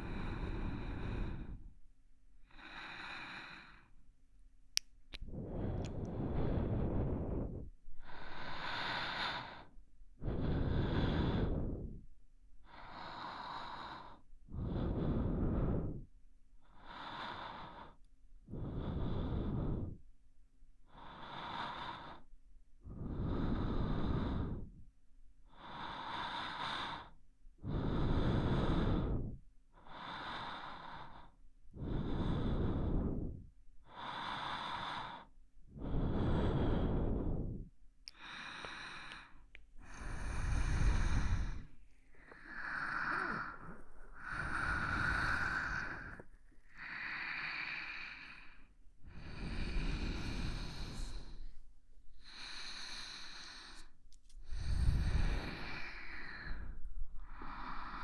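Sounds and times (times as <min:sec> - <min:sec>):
person breathing deeply: 0:00.0 - 0:01.8, 0:05.2 - 0:12.0, 0:12.7 - 0:16.1, 0:27.6 - 0:29.4, 0:30.2 - 0:33.5, 0:34.2 - 0:58.0.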